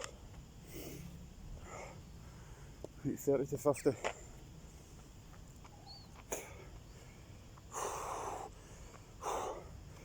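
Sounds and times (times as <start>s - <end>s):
person breathing hard: 6.3s - 10.0s.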